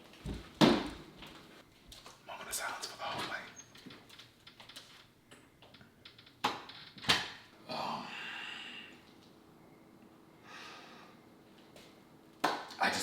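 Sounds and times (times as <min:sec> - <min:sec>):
long breathy sigh: 0:07.7 - 0:09.0
faint breath: 0:08.0 - 0:09.0, 0:10.4 - 0:11.3.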